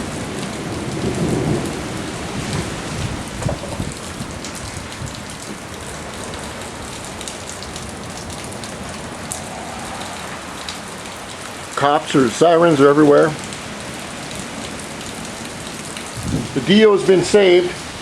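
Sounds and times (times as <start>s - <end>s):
wind buffeting microphone: 0.6s - 6.1s, 16.1s - 16.7s
wind rushing: 1.6s - 5.2s, 8.6s - 11.2s, 16.2s - 16.6s.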